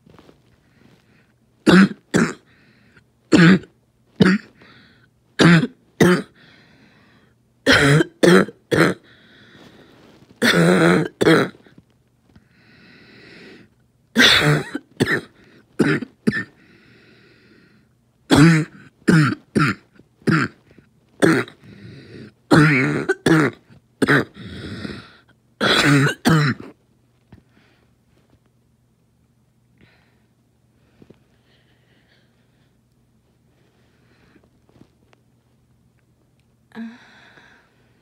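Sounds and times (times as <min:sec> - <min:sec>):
harsh hacking coughs: 0:01.6 - 0:02.5, 0:03.3 - 0:04.7, 0:05.4 - 0:06.4, 0:07.6 - 0:09.1, 0:10.4 - 0:11.7, 0:14.2 - 0:16.6, 0:18.3 - 0:26.8.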